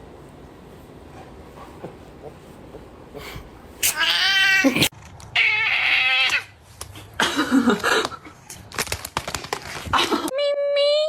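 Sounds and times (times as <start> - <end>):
cat meowing: 3.8 - 6.5.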